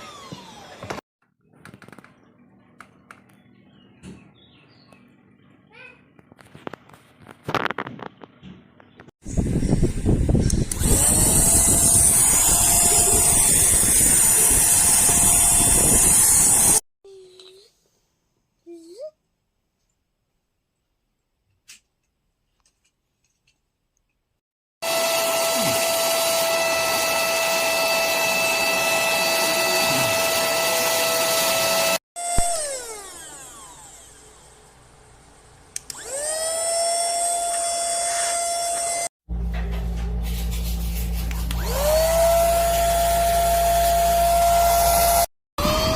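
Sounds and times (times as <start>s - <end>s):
handheld vacuum cleaner whining: 0.0s - 1.0s, 10.4s - 16.8s, 24.8s - 34.8s, 35.8s - 39.1s, 41.3s - 45.9s.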